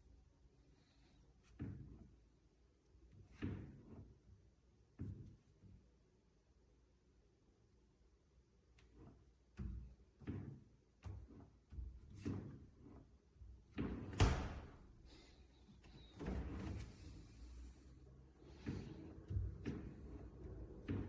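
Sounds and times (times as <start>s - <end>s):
fridge doors knocking and clunking: 13.4s - 15.0s, 18.4s - 21.0s.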